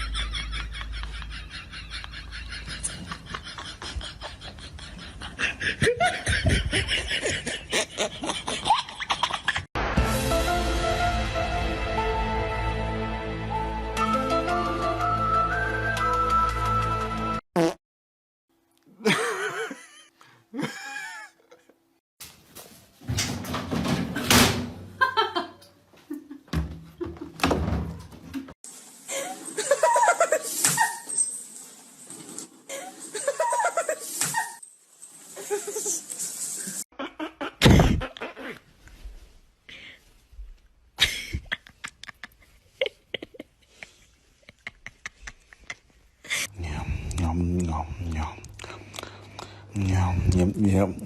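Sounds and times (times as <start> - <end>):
people laughing: 0.0 - 9.7
loud knocks and thuds: 26.5 - 28.5.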